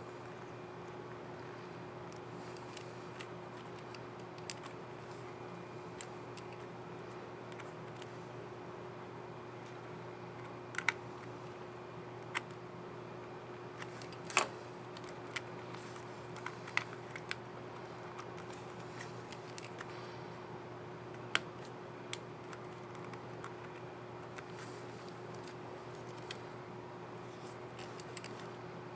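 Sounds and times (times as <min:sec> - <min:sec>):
faint steady hum: 0:00.0 - 0:28.9.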